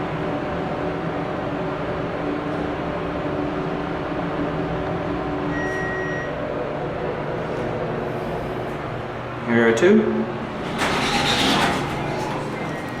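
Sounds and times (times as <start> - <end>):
elevator pump motor humming: 0.0 - 13.0
electronic beep: 5.5 - 6.4.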